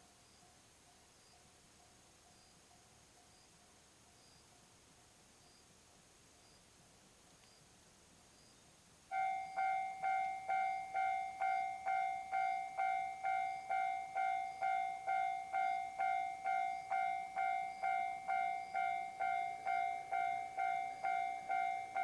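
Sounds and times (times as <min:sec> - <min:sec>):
level crossing alarm clanging: 0:09.1 - 0:22.0.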